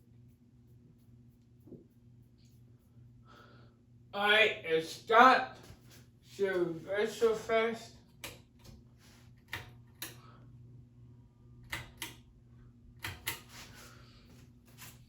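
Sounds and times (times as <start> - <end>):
faint low hum: 0.0 - 15.0
light clicks and taps: 8.0 - 8.8.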